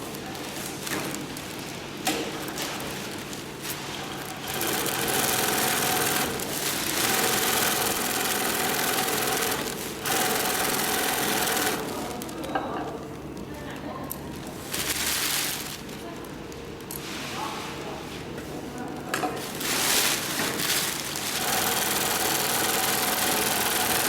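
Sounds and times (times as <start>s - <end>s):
sewing machine running: 4.2s - 12.2s, 20.2s - 24.0s.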